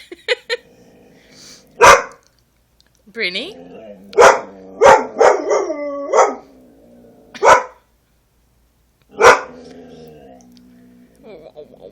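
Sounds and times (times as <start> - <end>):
dog barking: 1.8 - 2.2, 4.2 - 6.5, 7.4 - 7.8, 9.1 - 9.6
dog howling: 3.6 - 6.8.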